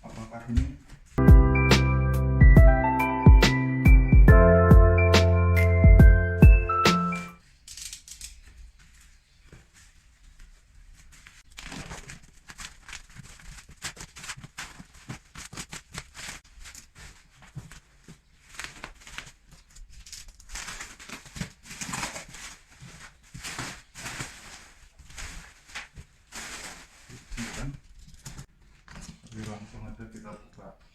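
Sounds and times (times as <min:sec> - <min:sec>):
cardboard parcel rustling and scraping: 0:08.4 - 0:29.6.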